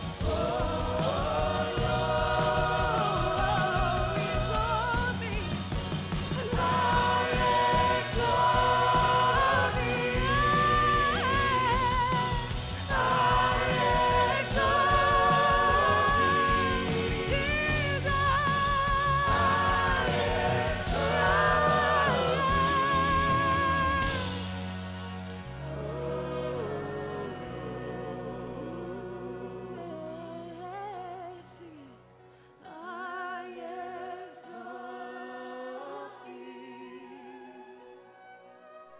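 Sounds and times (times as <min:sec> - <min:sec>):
person singing with vibrato: 0:00.0 - 0:24.5, 0:25.6 - 0:32.0
backing voices: 0:00.0 - 0:24.6
band with steady bass: 0:00.0 - 0:30.2.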